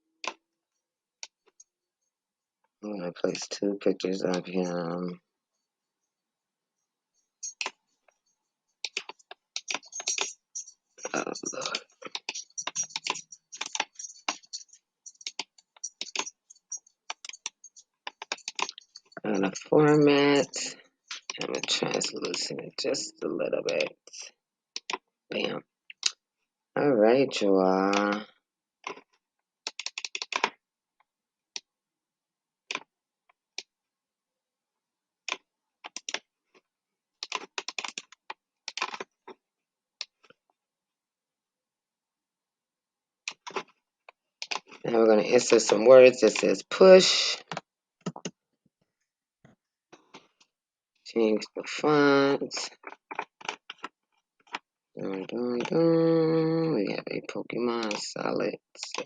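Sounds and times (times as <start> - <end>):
keyboard and mouse clicking: 7.4 - 7.8, 8.8 - 19.2, 24.8 - 25.0, 25.9 - 26.2, 29.7 - 30.6, 35.3 - 36.2, 37.2 - 39.1, 43.3 - 43.7, 44.4 - 44.8, 47.4 - 48.3, 52.8 - 54.6.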